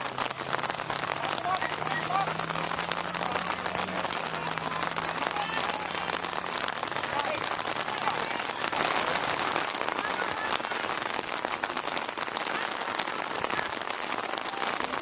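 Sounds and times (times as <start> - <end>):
rain pattering: 0.0 - 15.0.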